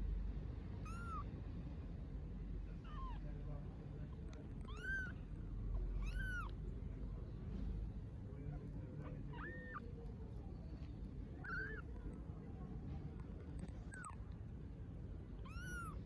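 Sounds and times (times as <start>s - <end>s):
kittens meowing: 0.8s - 1.3s, 4.5s - 6.6s, 9.0s - 9.9s, 11.4s - 12.0s, 15.4s - 16.0s.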